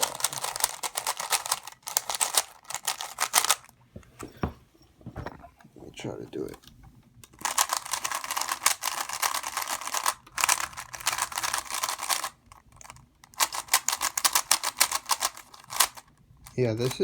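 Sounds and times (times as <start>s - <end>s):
plastic puzzle cube clicking: 0.0s - 3.7s, 7.2s - 17.0s.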